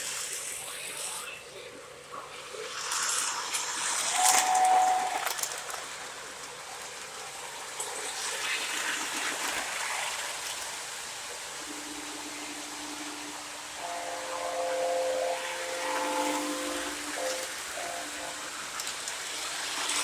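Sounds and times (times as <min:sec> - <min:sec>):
model train running with hiss: 0:00.0 - 0:20.0
model train whistle: 0:04.1 - 0:05.7, 0:11.6 - 0:20.0.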